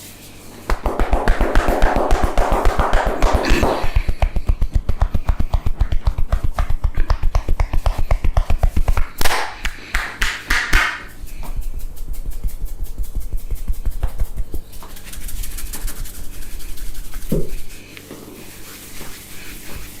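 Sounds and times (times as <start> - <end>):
hands rubbing head: 0.0 - 20.0
hands tapping on head: 0.7 - 11.6.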